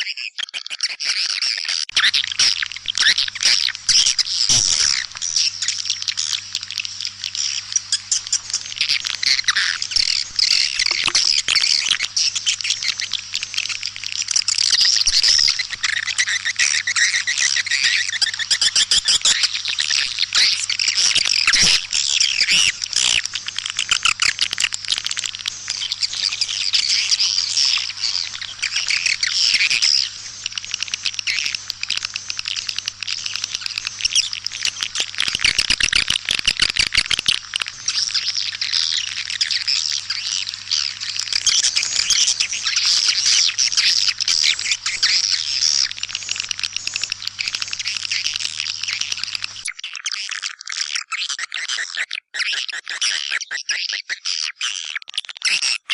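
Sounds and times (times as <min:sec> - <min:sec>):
swiftlets twittering chorus: 0:01.9 - 0:50.4
rapid clicks: 0:18.7 - 0:49.7.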